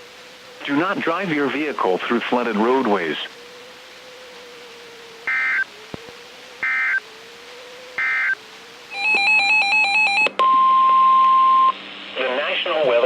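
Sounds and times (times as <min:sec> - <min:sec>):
faint steady hum: 0:00.0 - 0:13.0
warbling data tones: 0:05.2 - 0:05.7, 0:06.5 - 0:07.1, 0:08.0 - 0:10.2
digital data tone bursts: 0:05.3 - 0:05.7, 0:06.6 - 0:07.0, 0:08.0 - 0:11.8.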